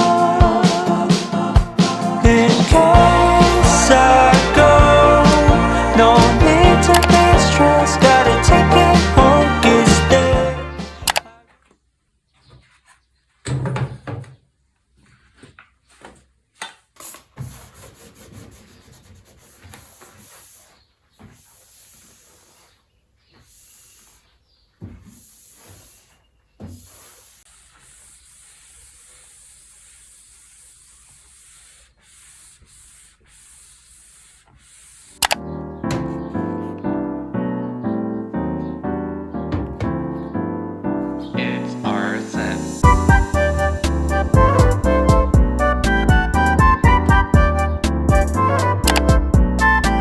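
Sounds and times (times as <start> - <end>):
rubbing and scrubbing: 15.0 - 35.2.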